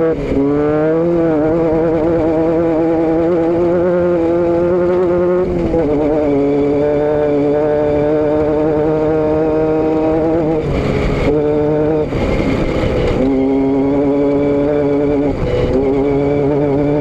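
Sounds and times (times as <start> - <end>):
vehicle engine drone: 0.0 - 17.0.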